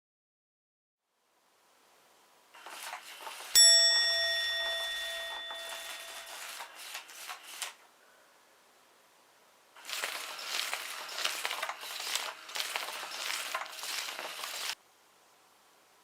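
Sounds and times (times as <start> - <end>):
bell-like chime ringing: 3.6 - 6.7.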